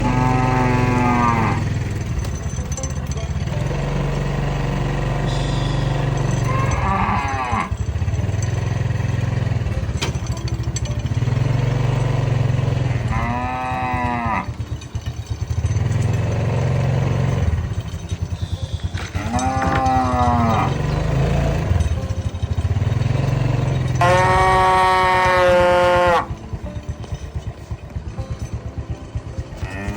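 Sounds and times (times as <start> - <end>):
cattle mooing: 0.0 - 1.8, 5.3 - 8.1, 12.9 - 14.7, 18.9 - 21.8, 23.9 - 26.4, 29.6 - 29.9
small engine running: 0.0 - 29.9.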